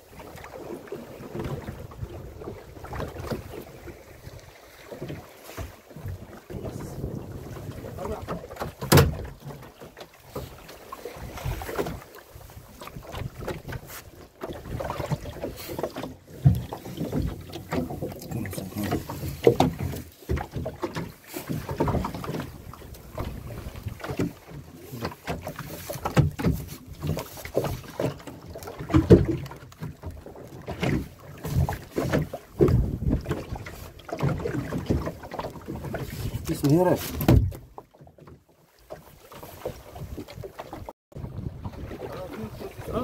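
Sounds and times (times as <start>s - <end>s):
water sounds: 0.0s - 43.0s
irregular knocks on boat: 8.0s - 10.5s, 14.4s - 18.2s, 18.8s - 36.0s, 37.1s - 38.4s.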